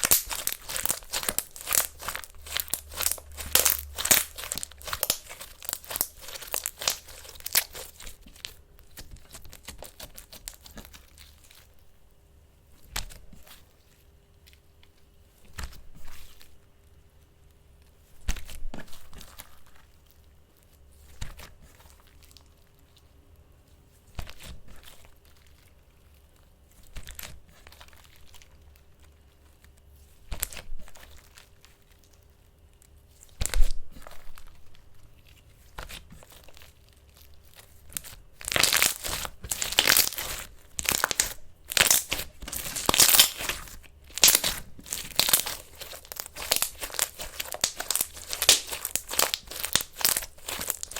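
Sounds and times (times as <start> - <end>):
slime squished by hand: 0.0 - 11.7, 33.1 - 34.7, 35.7 - 50.9.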